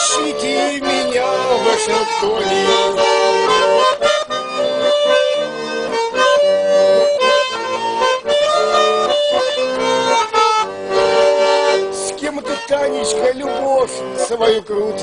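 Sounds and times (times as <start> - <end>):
free-reed instrument playing chords: 0.0 - 15.0.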